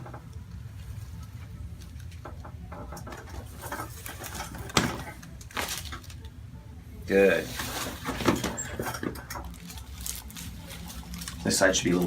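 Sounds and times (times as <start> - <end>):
low hum: 0.0 - 8.1.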